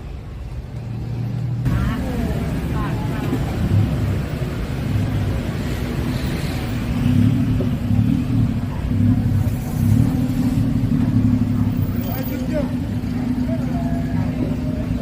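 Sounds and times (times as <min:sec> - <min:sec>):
vehicle engine humming: 0:00.0 - 0:15.0.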